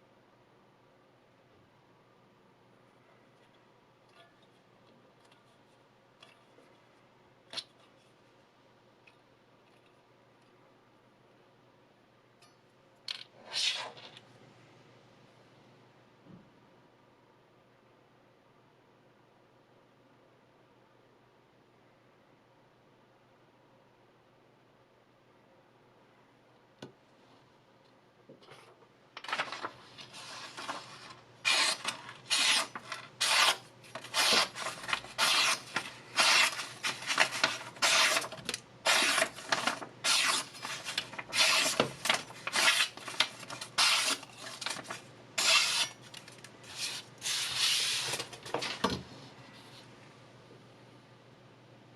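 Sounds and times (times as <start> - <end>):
knife blade rasping: 31.5 - 34.5, 45.4 - 46.0.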